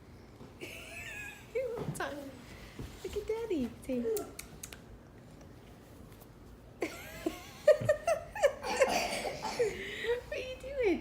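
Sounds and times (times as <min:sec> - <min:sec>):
child tongue clicks: 0:04.2 - 0:04.8.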